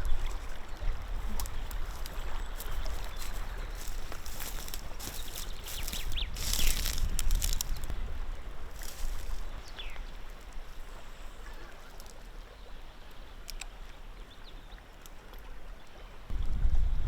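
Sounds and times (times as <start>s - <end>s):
wind rumble on microphone: 0.0s - 11.2s, 16.3s - 17.0s
river water running: 0.0s - 16.4s.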